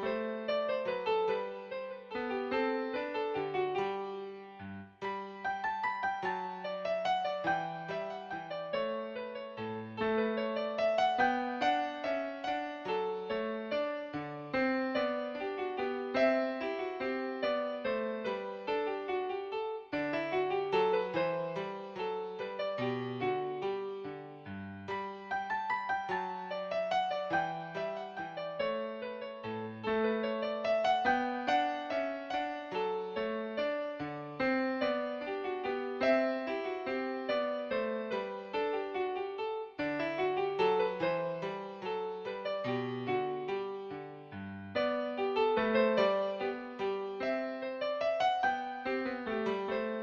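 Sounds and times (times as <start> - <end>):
gentle piano melody: 0.0 - 50.0.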